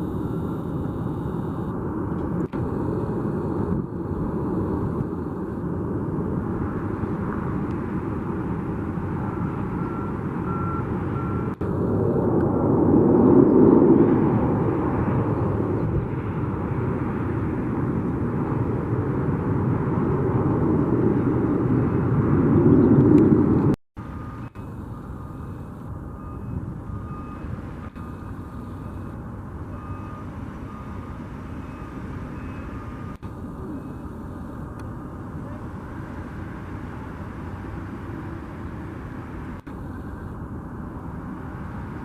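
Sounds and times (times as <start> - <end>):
vehicle reversing beeper: 0.0 - 1.8, 9.7 - 12.0, 24.0 - 34.7
airliner engines rushing past: 0.0 - 42.0.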